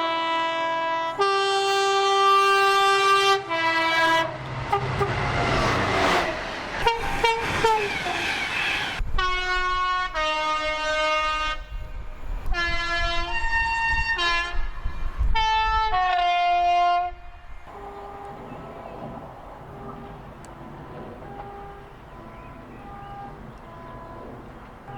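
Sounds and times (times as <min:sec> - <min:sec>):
locomotive horn playing notes: 0:00.0 - 0:07.9, 0:09.2 - 0:24.9
train wheels on rails: 0:03.3 - 0:09.9, 0:17.6 - 0:24.9.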